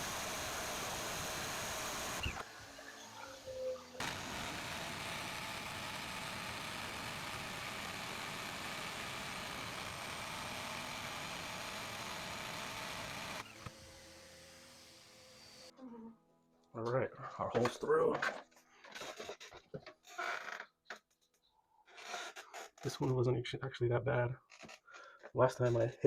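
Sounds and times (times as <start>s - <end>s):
hammer drill boring through wall: 0.0s - 2.5s, 4.0s - 15.7s.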